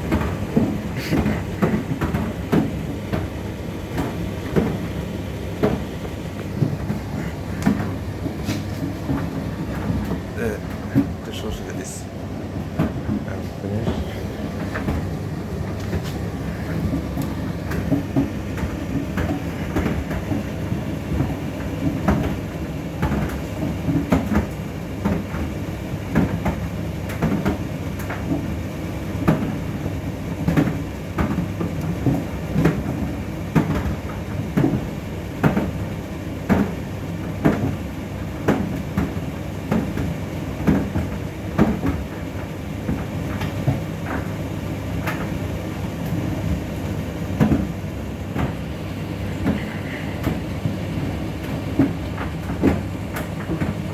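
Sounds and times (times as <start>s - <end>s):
tumble dryer humming: 0.0s - 23.6s
dryer drum knocking: 0.0s - 53.9s.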